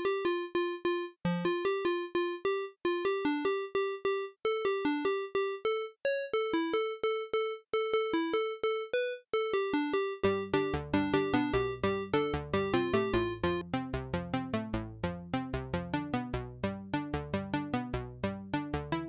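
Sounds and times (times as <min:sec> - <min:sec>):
synthesizer plucked melody: 0:10.2 - 0:13.6.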